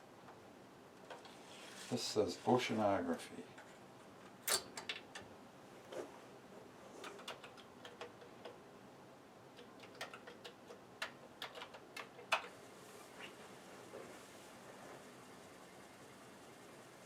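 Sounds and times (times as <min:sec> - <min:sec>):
keyboard typing: 0:07.0 - 0:08.6, 0:09.6 - 0:12.5.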